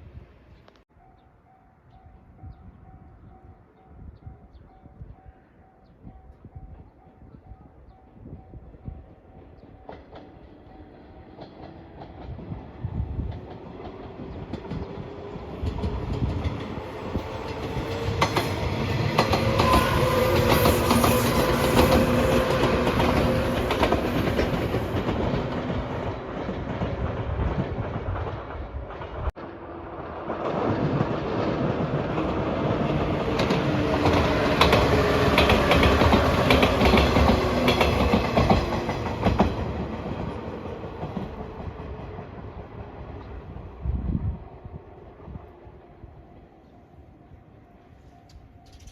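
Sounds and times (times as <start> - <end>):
train passing: 8.0 - 48.9
wheels clattering on rails: 30.3 - 42.2.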